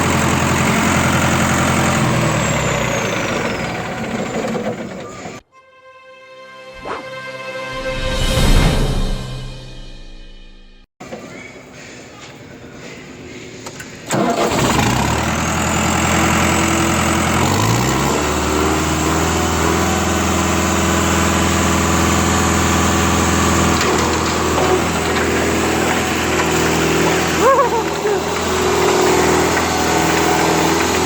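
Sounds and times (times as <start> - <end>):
engine starting and idling: 0.0 - 5.4, 13.7 - 31.0.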